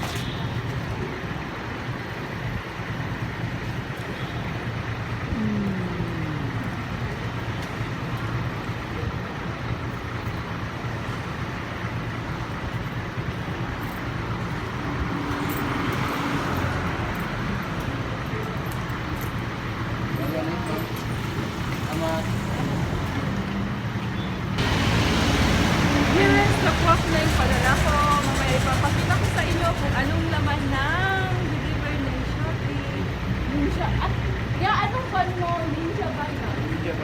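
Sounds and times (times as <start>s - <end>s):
road traffic: 0.0s - 37.0s
passing vehicle engine: 10.9s - 34.6s.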